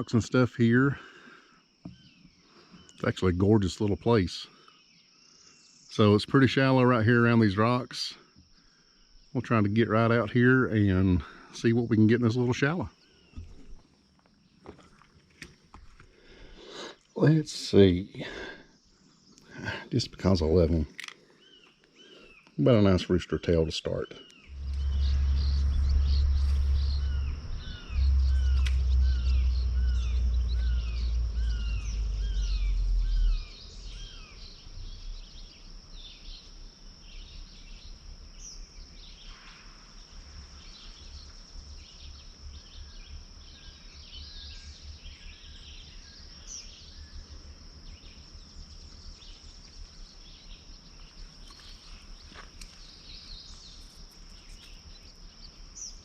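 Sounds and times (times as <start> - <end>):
birds calling: 0.0 - 39.6, 40.5 - 56.0
high insect drone: 0.0 - 56.0
loud low rumble: 24.4 - 36.1.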